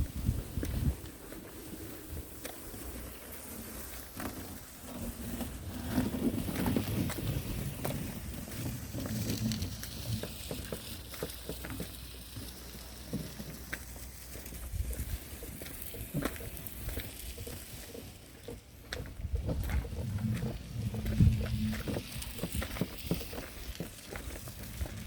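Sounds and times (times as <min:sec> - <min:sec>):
machine low rumble: 0:04.1 - 0:25.0.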